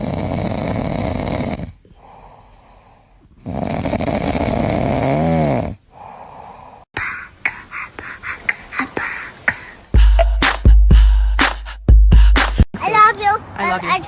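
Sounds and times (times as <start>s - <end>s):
dog snoring: 0.0s - 1.9s, 3.3s - 5.8s.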